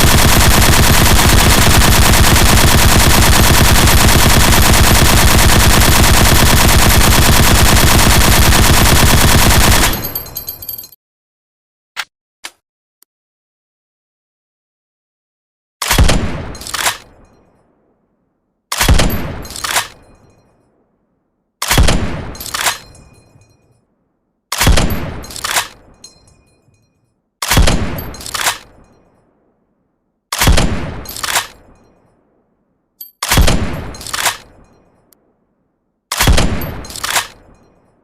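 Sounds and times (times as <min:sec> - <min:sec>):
machine gun firing bursts: 0:00.0 - 0:10.6.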